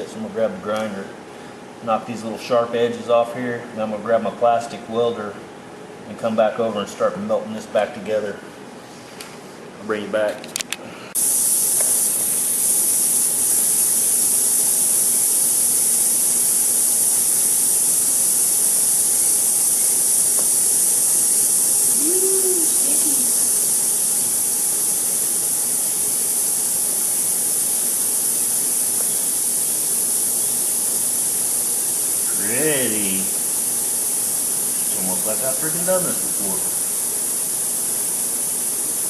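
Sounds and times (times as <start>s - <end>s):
hot-air welder hissing: 11.0s - 39.0s.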